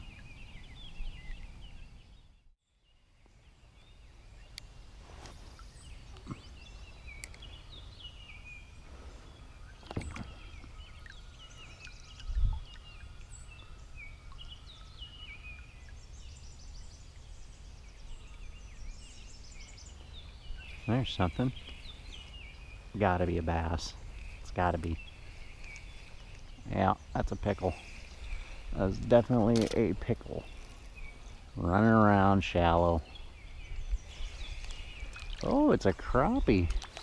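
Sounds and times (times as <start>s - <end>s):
small birds singing and chirping: 0.0s - 37.0s
sharp clicks: 29.5s - 29.9s.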